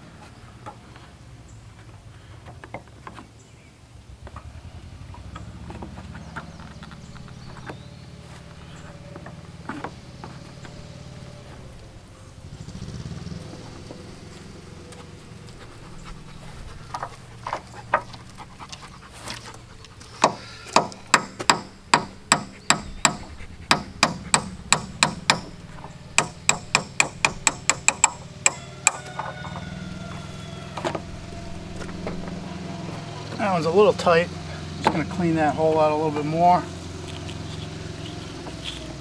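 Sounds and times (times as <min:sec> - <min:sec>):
hammer tapping pin into hinge: 0:20.2 - 0:25.6, 0:26.2 - 0:29.6.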